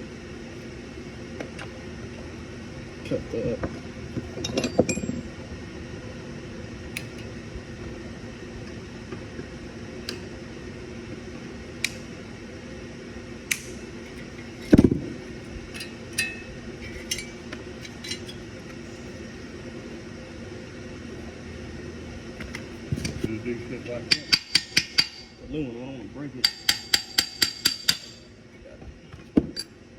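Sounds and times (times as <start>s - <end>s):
steady fan-like hum: 0.0s - 29.9s
tools and metal parts clinking: 4.4s - 5.2s, 15.7s - 18.4s.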